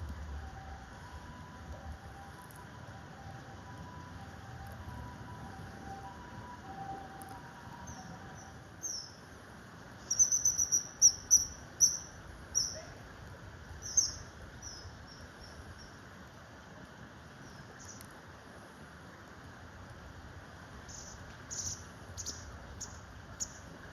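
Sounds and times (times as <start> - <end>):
low background rumble: 0.0 - 23.9
kingfisher shrill calls: 10.1 - 12.8.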